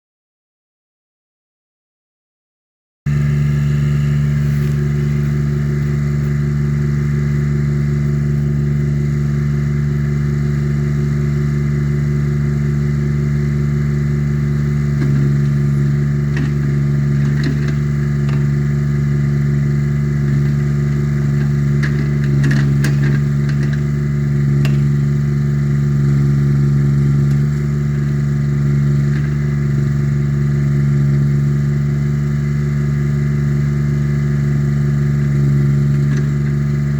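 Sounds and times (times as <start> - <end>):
small engine running: 3.1 - 36.9
light clanks: 20.3 - 24.0.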